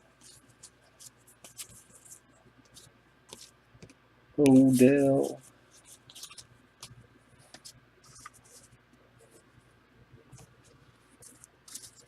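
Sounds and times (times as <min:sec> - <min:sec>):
trading cards swishing: 0:10.4 - 0:12.0.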